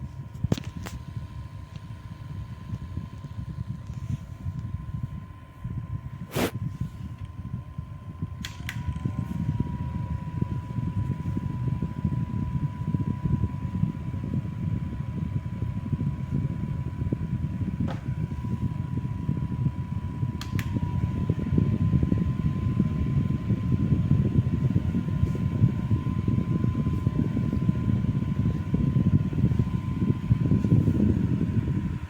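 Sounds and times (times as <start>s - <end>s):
electric fan running: 0.0s - 32.0s.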